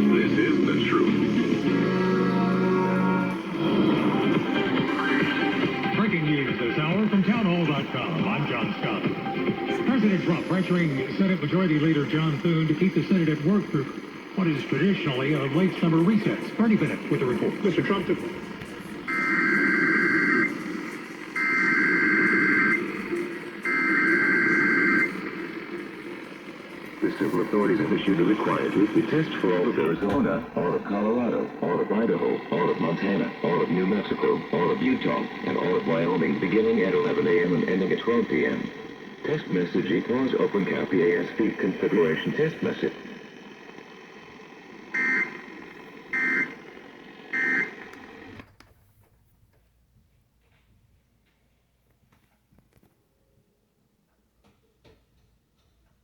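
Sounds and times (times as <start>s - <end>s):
low radio noise: 0.0s - 49.6s
digital data tone bursts: 19.1s - 26.0s.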